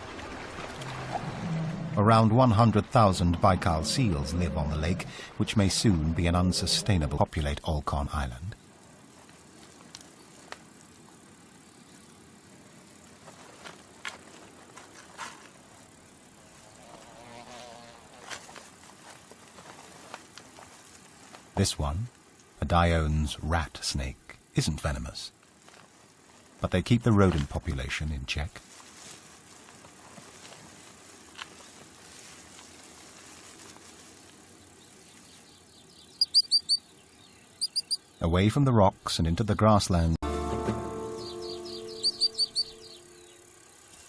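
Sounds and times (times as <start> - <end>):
faint outdoor ambience: 0.0 - 44.0
insect buzzing: 8.6 - 14.5, 15.1 - 19.3, 29.4 - 38.2, 41.0 - 44.0
sharp high-pitched chirps: 36.2 - 36.8, 37.6 - 38.1, 41.1 - 43.4.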